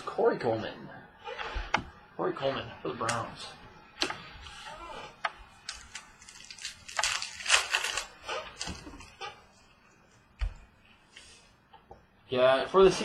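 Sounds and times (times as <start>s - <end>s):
cards rustling: 4.0s - 9.3s
wrapper crinkling: 5.6s - 9.3s.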